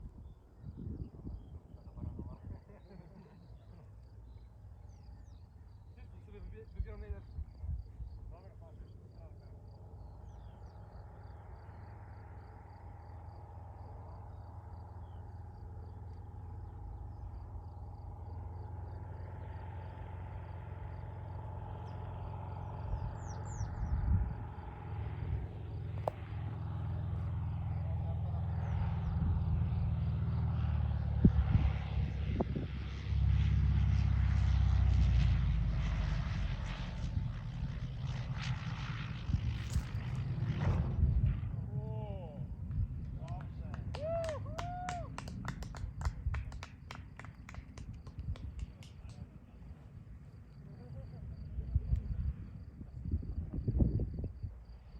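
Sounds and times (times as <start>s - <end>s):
light aircraft engine and propeller: 0.0s - 54.9s
crickets chirping: 0.2s - 30.6s, 39.3s - 54.9s.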